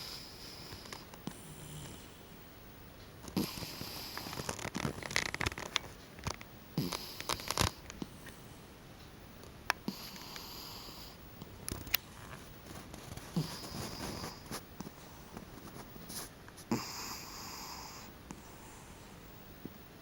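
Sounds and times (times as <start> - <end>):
cat snoring: 0.0 - 2.3, 3.4 - 4.5, 6.8 - 7.8, 9.9 - 11.2, 13.2 - 14.5, 16.7 - 18.8.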